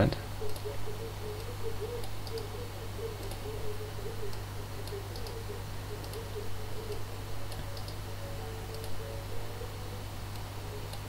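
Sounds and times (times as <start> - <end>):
low hum: 0.0 - 11.0
keyboard keys clicking: 3.2 - 9.4.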